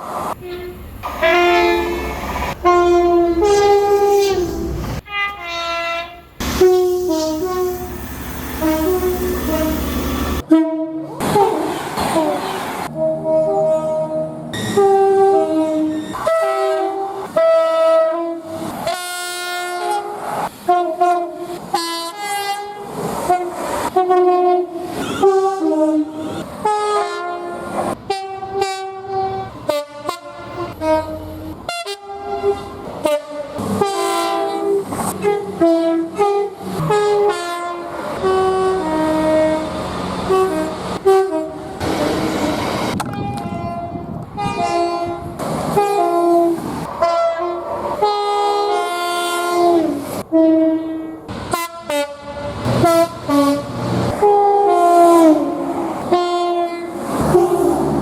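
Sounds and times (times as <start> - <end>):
train wheels on rails: 0.0 - 10.5, 32.3 - 48.6
locomotive air horn blasts: 0.4 - 12.2, 12.9 - 58.0.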